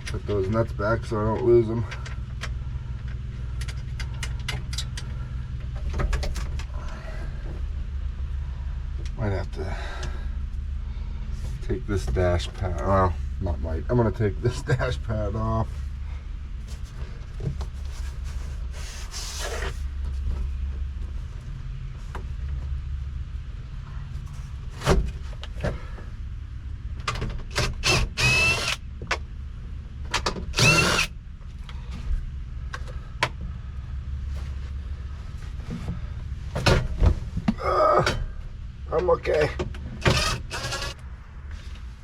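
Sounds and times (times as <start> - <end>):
steady low hum: 0.0 - 42.0
cordless drill spinning: 27.5 - 28.8, 30.5 - 31.1, 40.0 - 41.0.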